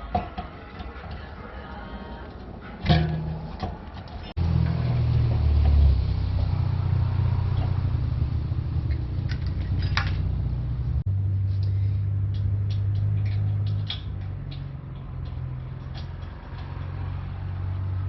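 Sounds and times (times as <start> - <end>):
low mechanical hum: 4.2 - 18.0.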